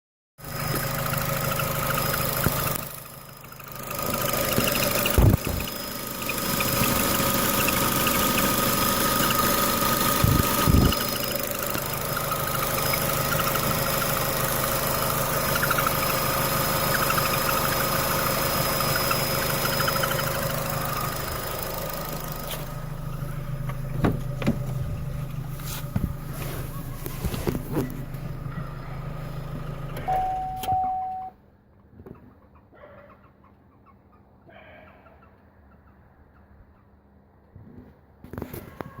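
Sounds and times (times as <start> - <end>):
car engine running: 0.4 - 31.3.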